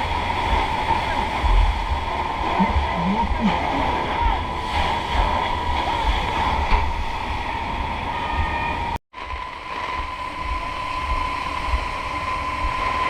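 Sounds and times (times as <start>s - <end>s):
steady high whine: 0.0s - 13.0s
wind rumbling on microphone: 0.0s - 13.0s.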